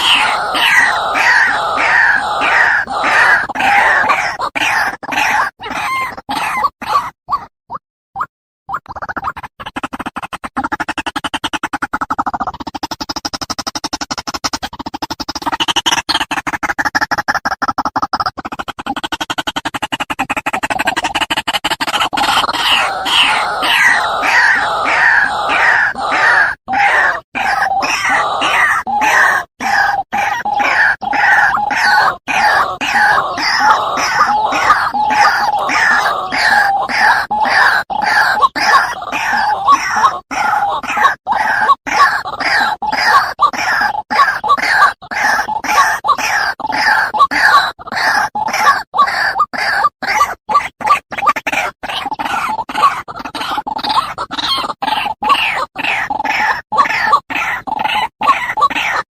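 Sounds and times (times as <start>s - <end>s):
waterhen calling: 0.0s - 4.8s, 30.2s - 40.8s.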